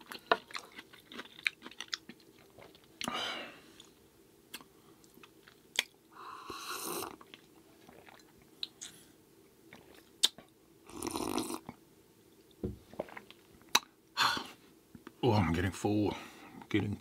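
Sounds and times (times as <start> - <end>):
person chewing: 0.0 - 3.2, 3.8 - 9.0.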